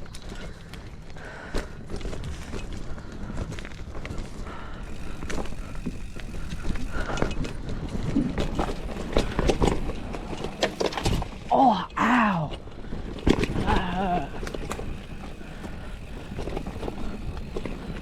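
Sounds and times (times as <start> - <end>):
bike tyres over dirt and roots: 0.0 - 18.0
bike rattles and knocks: 0.1 - 18.0.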